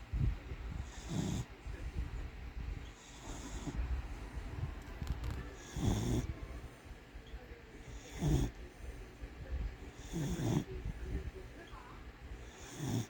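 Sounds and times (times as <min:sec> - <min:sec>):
pet snoring: 0:00.7 - 0:02.1, 0:02.8 - 0:06.8, 0:07.8 - 0:09.1, 0:09.8 - 0:13.0.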